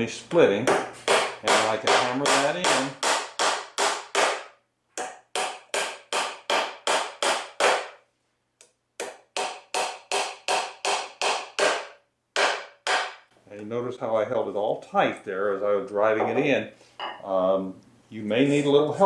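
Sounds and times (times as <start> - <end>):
hammer striking nails into wood: 0.7 - 8.0, 9.0 - 13.2.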